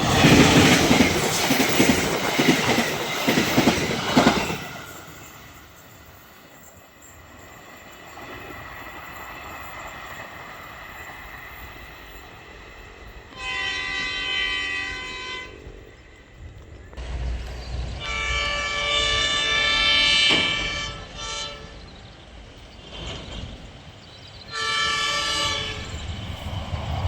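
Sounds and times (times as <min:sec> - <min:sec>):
low steady train noise: 0:00.0 - 0:27.0
locomotive air horn blast: 0:13.3 - 0:15.7, 0:18.0 - 0:21.8, 0:24.5 - 0:26.0.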